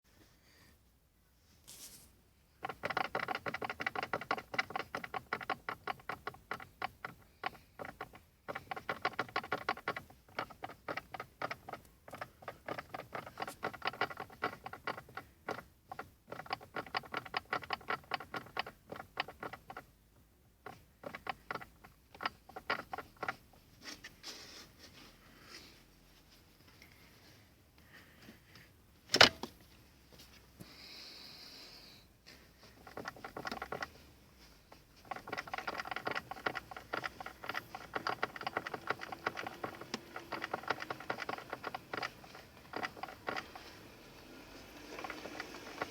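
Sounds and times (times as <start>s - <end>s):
gearbox knocking: 2.6s - 19.9s, 20.6s - 23.6s, 32.7s - 34.1s, 34.7s - 45.9s.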